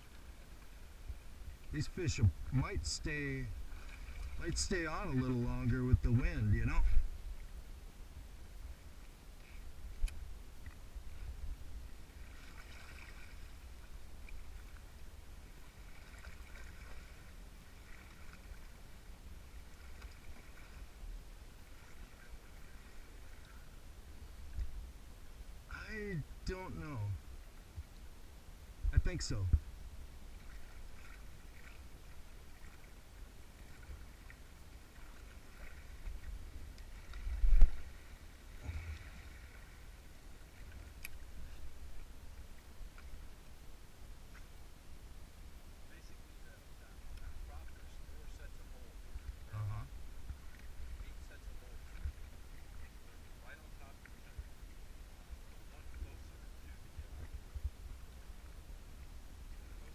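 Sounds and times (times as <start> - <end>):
water lapping against boat hull: 0.0 - 7.5, 9.0 - 23.7, 29.5 - 43.5, 47.0 - 58.6
wind rumbling on microphone: 1.0 - 9.0, 9.7 - 14.7, 28.8 - 31.4, 35.5 - 39.8, 55.2 - 59.9.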